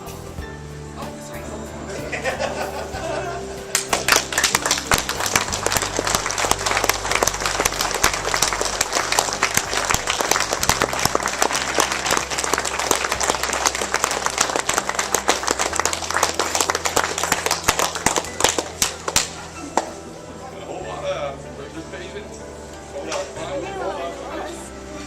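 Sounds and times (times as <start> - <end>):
crowd applauding: 2.0 - 20.2.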